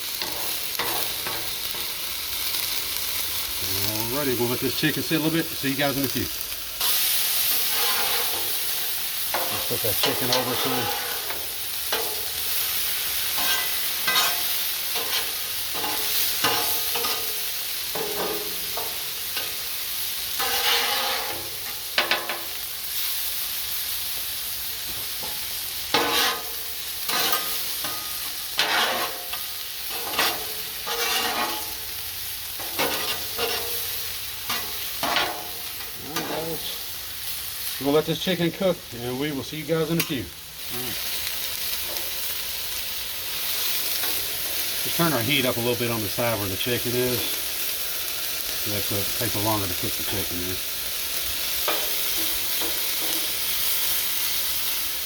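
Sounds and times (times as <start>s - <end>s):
chicken sizzling on a griddle: 0.0s - 55.0s
utensil scraping on metal griddle: 0.1s - 6.2s, 6.8s - 23.1s, 24.8s - 36.8s, 51.2s - 54.8s.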